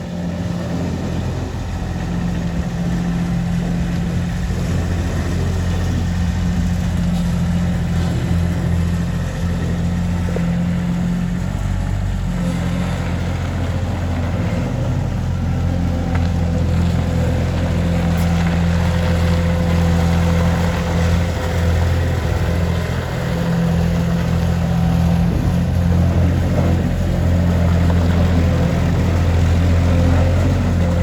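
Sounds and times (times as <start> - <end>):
diesel engine running: 0.0 - 31.0.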